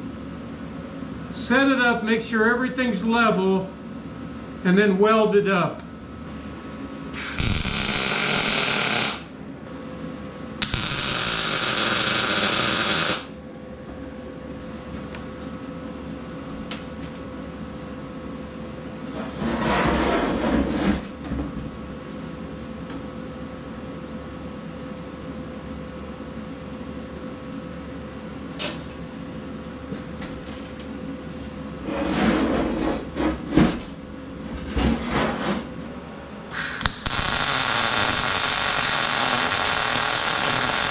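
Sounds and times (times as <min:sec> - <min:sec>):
faint steady hum: 0:00.0 - 0:19.0, 0:35.8 - 0:40.9
welding arc crackle and hiss: 0:07.2 - 0:09.3, 0:10.6 - 0:13.4, 0:36.5 - 0:40.9.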